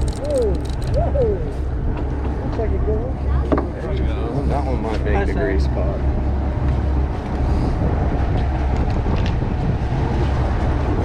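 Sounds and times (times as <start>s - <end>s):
faint clicks: 0.0s - 1.0s
water noise: 0.0s - 3.7s
boat engine rumble: 0.0s - 11.0s
wind: 0.0s - 11.0s.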